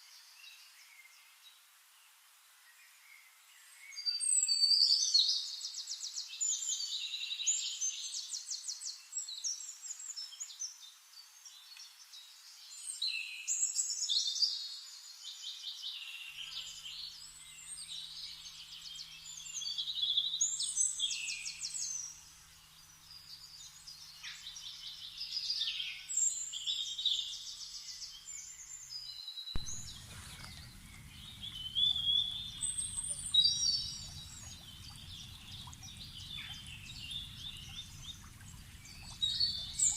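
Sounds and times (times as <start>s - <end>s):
songbirds chirping and trilling: 15.2s - 39.9s
low rumble: 29.6s - 39.9s.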